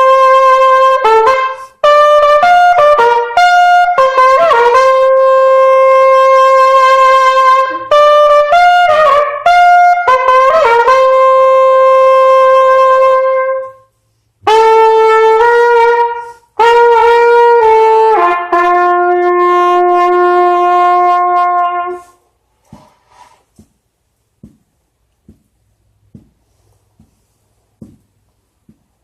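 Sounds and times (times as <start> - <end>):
solo trumpet melody: 0.0 - 22.2.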